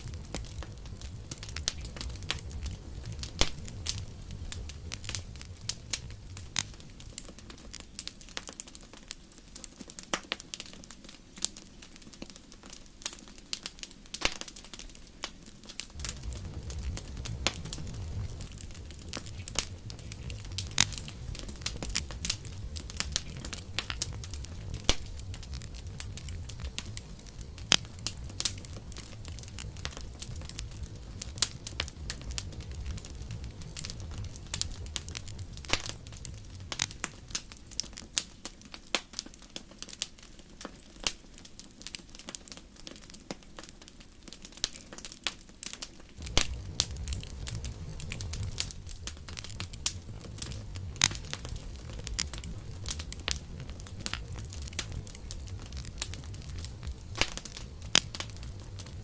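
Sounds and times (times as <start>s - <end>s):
low rumble: 0.0s - 7.4s, 15.9s - 37.8s, 46.2s - 59.0s
campfire crackling and popping: 0.0s - 59.0s.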